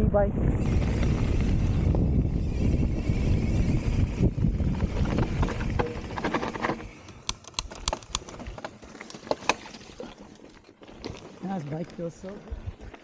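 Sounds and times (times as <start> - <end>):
wind rush on microphone: 0.0 - 7.0, 12.4 - 13.0
bike tyres rolling on dirt trail: 0.1 - 13.0
bike clicks and taps: 4.8 - 9.6.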